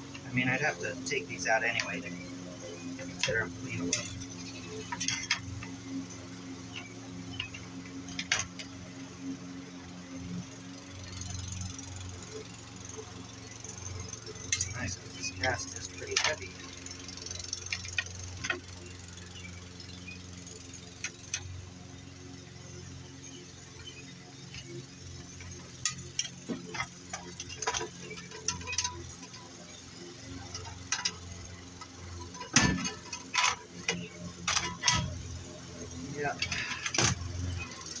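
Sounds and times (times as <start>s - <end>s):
steady low hum: 0.0s - 5.7s
scrap metal clinking: 3.0s - 5.7s, 25.4s - 37.8s.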